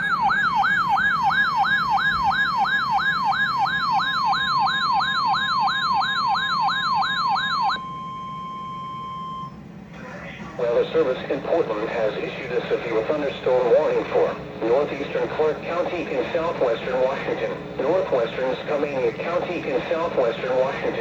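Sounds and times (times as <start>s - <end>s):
steady warning alarm tone: 0.0s - 9.8s
sweeping alert siren: 0.0s - 9.8s.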